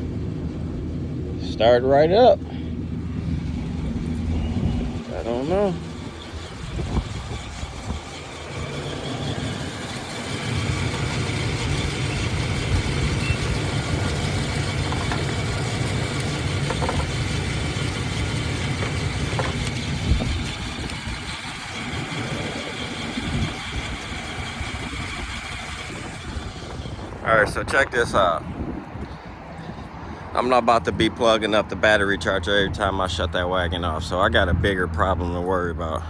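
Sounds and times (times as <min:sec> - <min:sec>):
car engine idling: 0:00.0 - 0:28.2.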